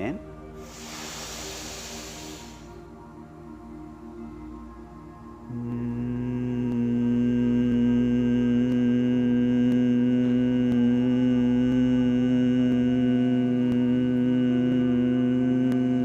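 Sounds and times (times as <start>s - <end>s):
man humming a low note: 5.4s - 16.0s.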